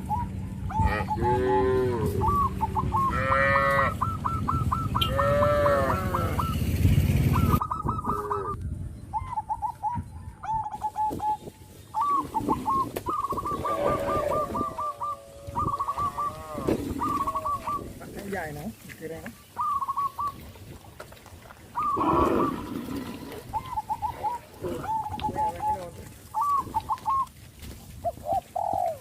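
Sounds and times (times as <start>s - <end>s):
steady low rumble: 0.0s - 10.7s
cattle mooing: 0.8s - 4.0s, 5.0s - 6.4s, 13.5s - 17.8s, 21.9s - 23.6s.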